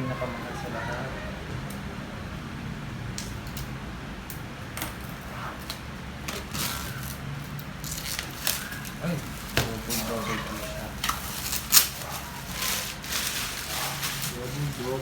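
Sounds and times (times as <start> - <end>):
books and packaging handled: 6.2 - 15.0.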